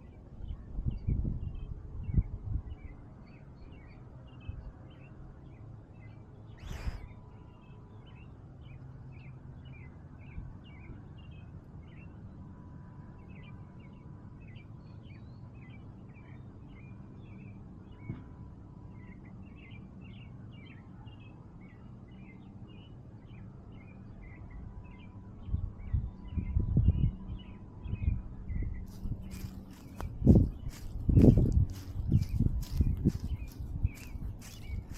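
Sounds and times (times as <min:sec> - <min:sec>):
small birds chirping: 0:00.0 - 0:12.2, 0:19.0 - 0:34.9
low background rumble: 0:25.4 - 0:34.9.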